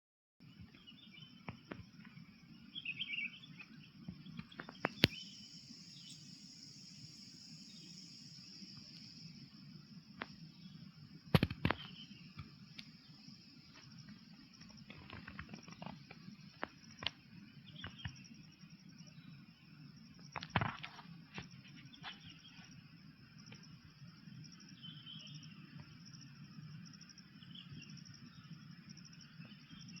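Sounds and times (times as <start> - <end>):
high insect drone: 0.5 - 30.0
bird chirping: 0.6 - 9.3.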